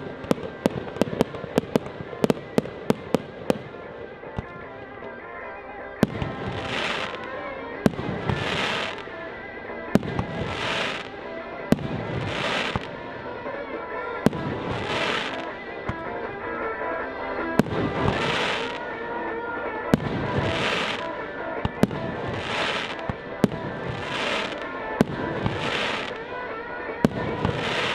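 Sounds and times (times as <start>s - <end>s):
firework bangs: 6.0s - 9.2s, 9.9s - 13.1s, 14.2s - 16.2s, 17.4s - 19.0s, 19.9s - 26.3s, 27.0s - 27.9s
crackling hiss of firework bursts: 6.1s - 9.2s, 9.9s - 13.1s, 14.3s - 15.6s, 17.6s - 19.0s, 19.9s - 26.2s, 27.0s - 27.9s.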